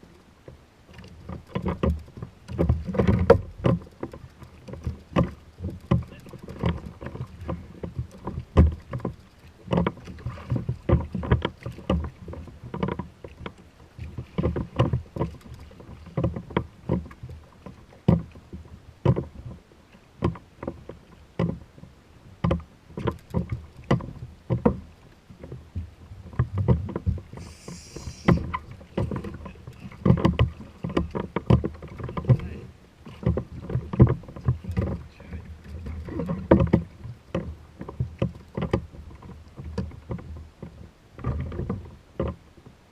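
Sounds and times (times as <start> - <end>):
water slapping against kayak hull: 0.4 - 42.8
brief hiss: 27.4 - 28.4.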